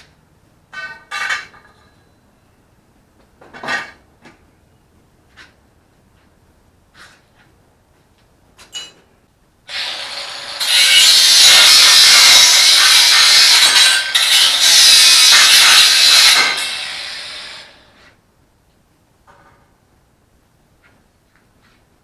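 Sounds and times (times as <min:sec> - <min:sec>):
angle grinder cutting: 0:09.7 - 0:17.9.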